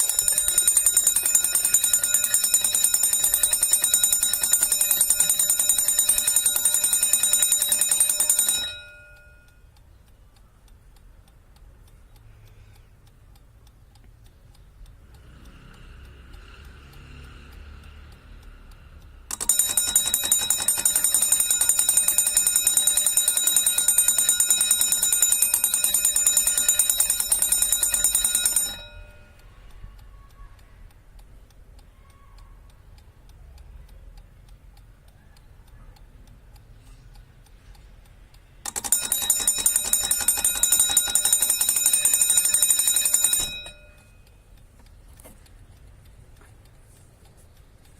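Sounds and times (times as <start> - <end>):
alarm clock bell ringing: 0.0 - 9.6, 19.3 - 29.4, 38.7 - 44.3
clock ticking: 0.0 - 47.9.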